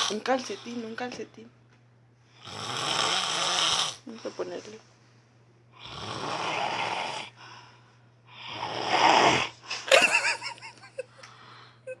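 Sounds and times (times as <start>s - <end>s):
man snoring heavily: 2.4s - 4.0s, 5.8s - 7.4s, 8.3s - 9.6s
faint breathing: 7.3s - 8.6s, 11.0s - 11.9s.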